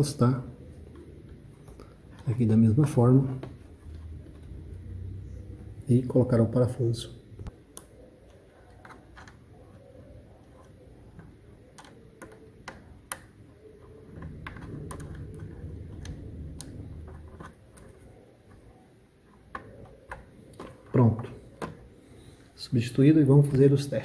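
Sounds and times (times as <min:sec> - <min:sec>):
screwdriver clicks and taps: 0:11.2 - 0:13.4.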